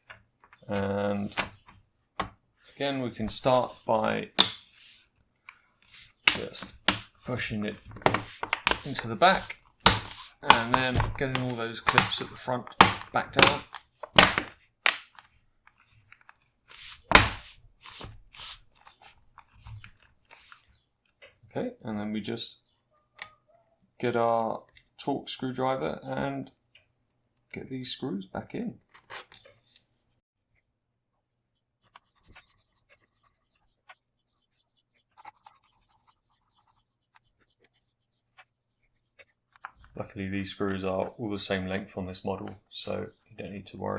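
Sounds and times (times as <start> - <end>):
rubbing and handling noises: 0.0 - 21.4
screwdriver clicking and scratching: 3.4 - 5.0, 5.9 - 16.2
plastic clips snapping: 4.4 - 4.7, 6.3 - 7.1, 8.0 - 15.3, 17.1 - 17.4.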